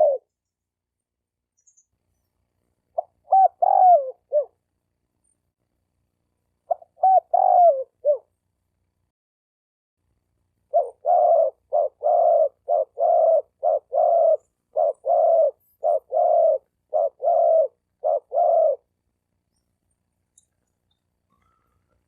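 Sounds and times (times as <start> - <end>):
dove cooing: 0.0 - 0.3, 3.0 - 4.6, 6.7 - 8.3, 10.7 - 18.9.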